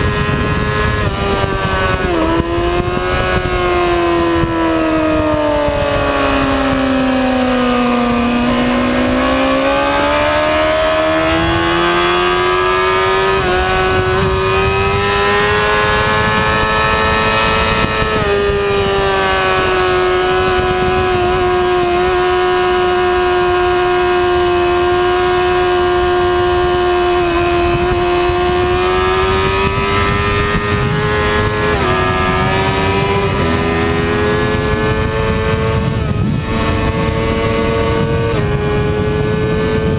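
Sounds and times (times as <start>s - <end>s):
wind rushing: 0.0s - 21.8s, 25.8s - 39.9s
motorcycle engine at high revs: 0.0s - 39.9s.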